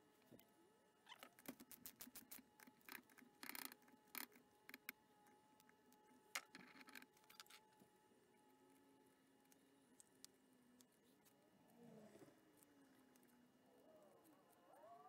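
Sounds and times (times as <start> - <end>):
faint steady hum: 0.0 - 15.0
metal parts clicking and scraping: 6.3 - 7.6.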